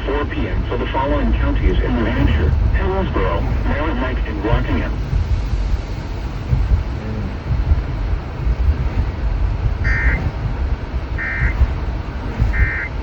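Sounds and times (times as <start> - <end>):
low rumble: 0.0 - 13.0
data tone bursts: 9.8 - 10.3, 11.2 - 11.6, 12.5 - 12.9.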